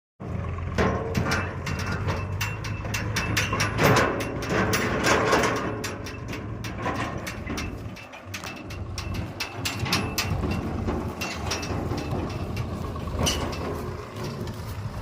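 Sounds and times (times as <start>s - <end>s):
diesel engine running under load: 0.2s - 15.0s
sharp metallic clanks and knocks: 0.4s - 15.0s.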